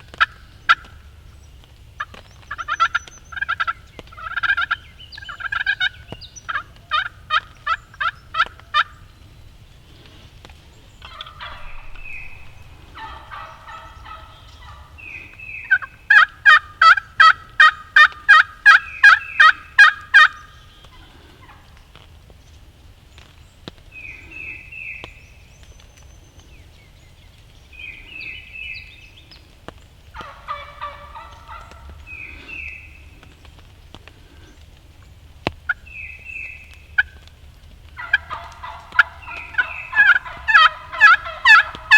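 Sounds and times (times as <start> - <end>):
turkey yelps: 2.0 - 8.9, 11.0 - 21.7, 30.1 - 32.8, 38.0 - 41.9
turkey gobbles: 11.0 - 21.7, 30.1 - 32.8, 37.9 - 41.9.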